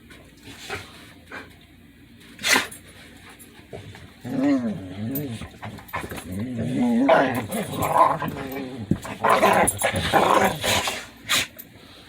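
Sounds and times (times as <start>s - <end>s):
dog sneezing and snorting: 2.4s - 2.8s, 10.6s - 11.6s
dogs growling: 3.5s - 11.6s.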